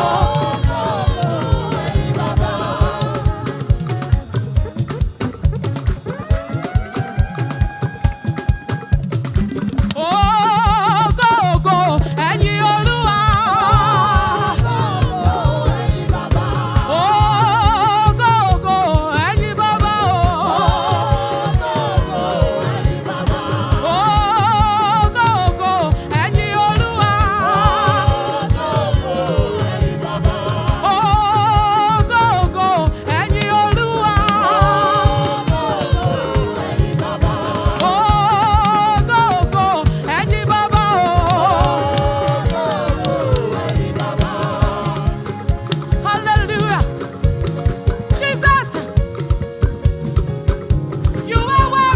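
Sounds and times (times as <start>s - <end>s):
bass: 0.0s - 8.2s, 8.9s - 51.9s
choir singing with vibrato: 0.0s - 49.5s
busy drum beat: 0.0s - 51.9s.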